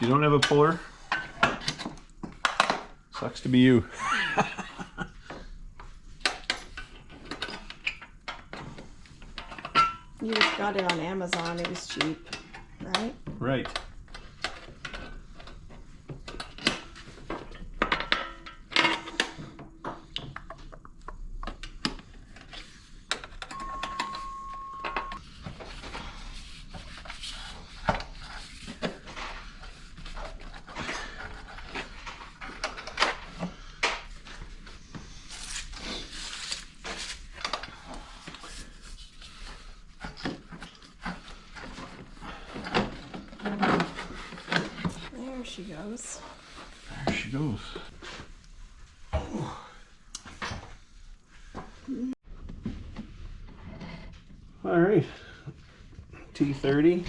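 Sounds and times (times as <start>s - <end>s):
short high tone: 23.6s - 25.2s.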